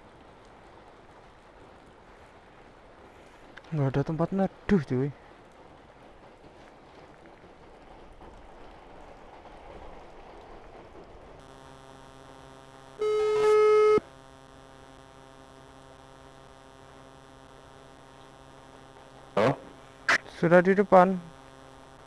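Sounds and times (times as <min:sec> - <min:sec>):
rain noise: 0:00.0 - 0:22.0
steady electrical hum: 0:00.0 - 0:22.0
phone ringback tone: 0:13.0 - 0:14.0.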